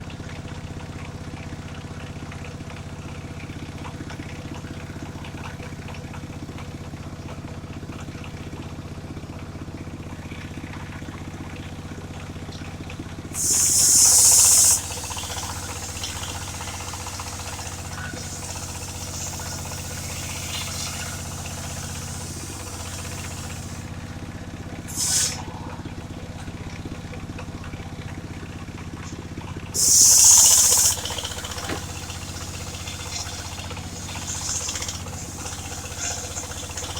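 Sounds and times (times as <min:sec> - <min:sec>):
sawmill engine running: 0:00.4 - 0:36.9
loud hiss: 0:13.4 - 0:23.9, 0:24.8 - 0:25.6, 0:29.8 - 0:36.9.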